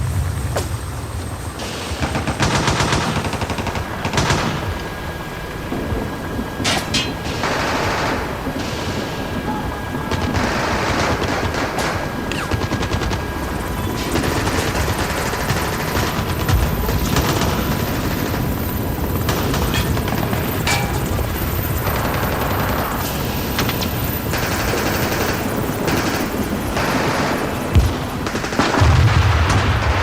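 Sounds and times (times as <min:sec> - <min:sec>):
machine-gun and rifle fire: 0:01.6 - 0:05.0, 0:07.2 - 0:08.9, 0:10.1 - 0:18.4, 0:24.3 - 0:30.0.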